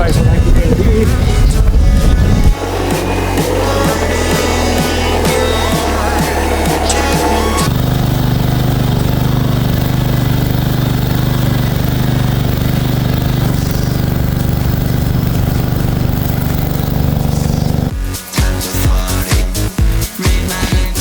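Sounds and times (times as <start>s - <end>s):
lawn mower engine running: 0.0s - 17.9s
background music with a beat: 1.0s - 7.7s, 17.9s - 21.0s.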